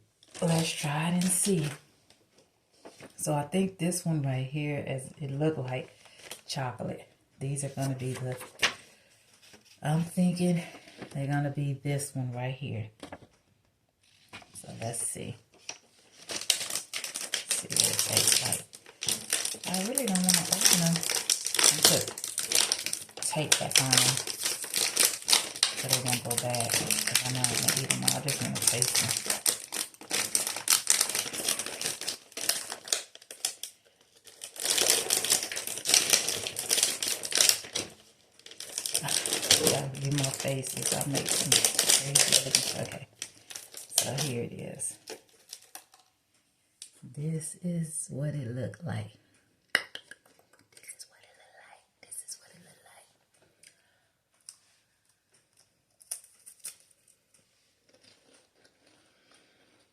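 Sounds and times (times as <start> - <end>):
packaging crinkling: 0.2 - 3.2, 7.8 - 9.8, 14.0 - 46.2, 54.3 - 59.9
crunchy cookie being chewed: 16.3 - 44.1, 55.2 - 59.9.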